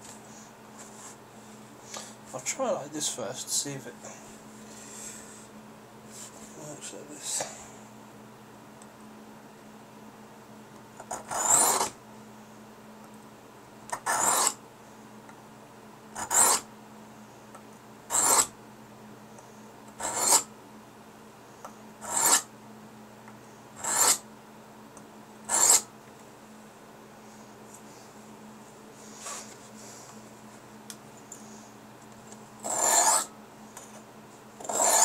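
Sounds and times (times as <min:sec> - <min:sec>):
knife scraping on sharpening stone: 0:14.1 - 0:14.6, 0:20.0 - 0:20.4, 0:22.0 - 0:22.4, 0:23.8 - 0:24.2, 0:25.5 - 0:25.8, 0:32.6 - 0:33.3, 0:34.6 - 0:35.0.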